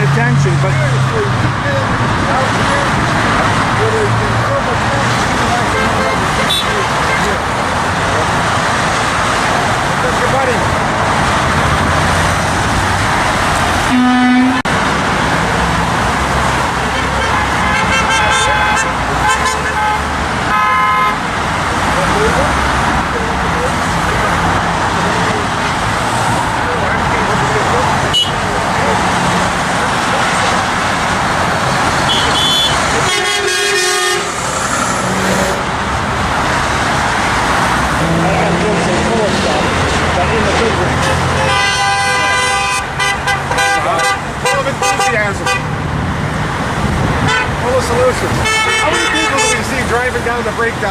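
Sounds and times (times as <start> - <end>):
highway traffic passing: 0.0 - 50.9
car horn toot: 5.8 - 6.8, 13.8 - 14.7, 16.9 - 21.3, 28.1 - 28.4, 32.1 - 35.6, 41.1 - 45.7, 47.2 - 47.6, 48.4 - 49.6.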